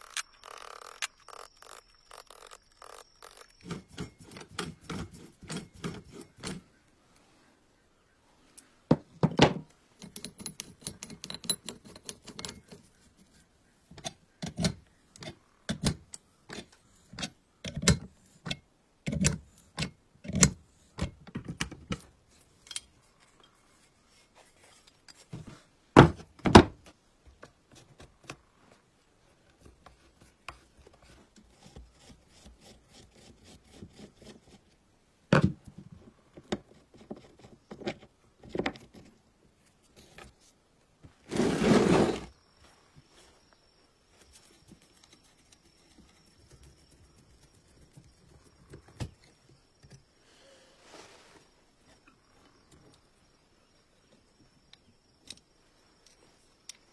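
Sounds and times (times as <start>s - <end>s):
tools and metal parts knocking: 2.4s - 6.6s, 8.9s - 13.0s.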